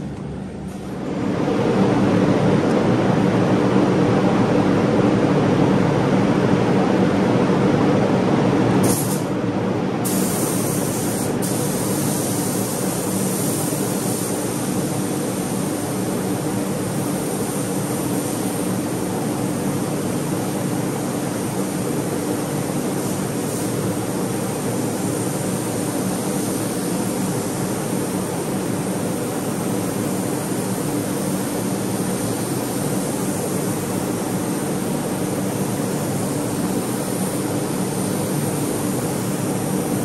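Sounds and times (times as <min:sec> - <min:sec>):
paint spray gun hissing: 0:08.8 - 0:09.3, 0:10.0 - 0:16.1, 0:22.7 - 0:40.0.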